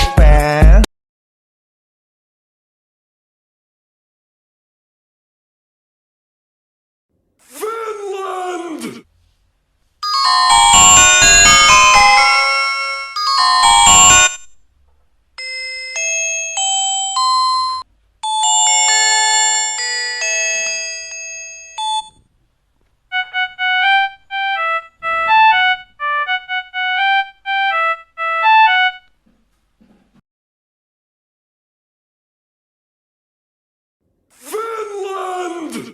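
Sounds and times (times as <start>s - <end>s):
chime melodies: 10.0s - 14.5s, 15.4s - 22.1s
synthesized phone ringtones: 10.0s - 14.5s, 15.4s - 22.2s, 23.1s - 29.0s.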